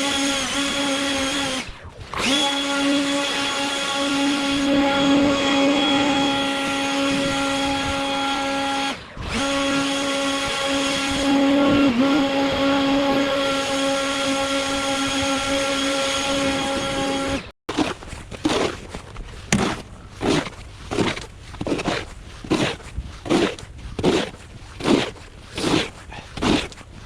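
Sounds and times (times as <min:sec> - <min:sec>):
blower motor whining: 0:00.0 - 0:17.5.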